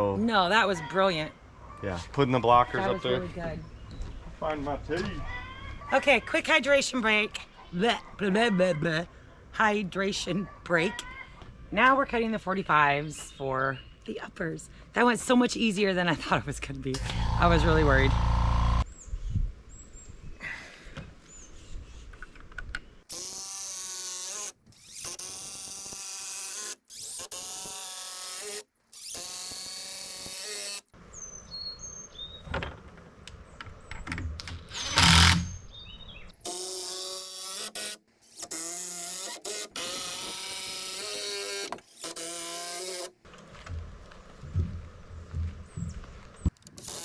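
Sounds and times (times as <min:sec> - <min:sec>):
electric saw cutting wood: 0:17.0 - 0:18.8, 0:23.1 - 0:30.9, 0:34.8 - 0:35.4, 0:36.4 - 0:43.1, 0:46.8 - 0:47.0.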